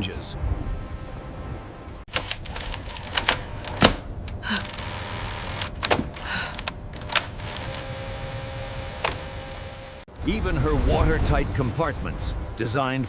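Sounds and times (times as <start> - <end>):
sharp clicks and knocks: 5.5 - 7.8.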